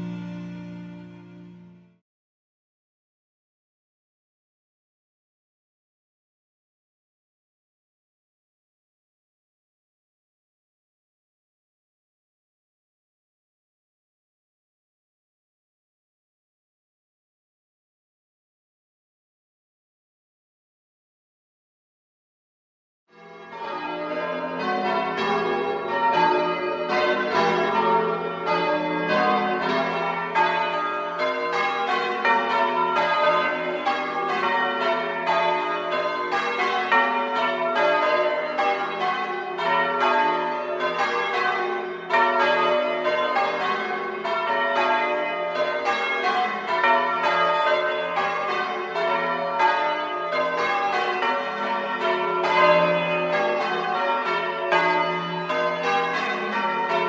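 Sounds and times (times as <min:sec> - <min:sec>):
church bells change ringing: 0:00.0 - 0:01.8, 0:23.2 - 0:57.0.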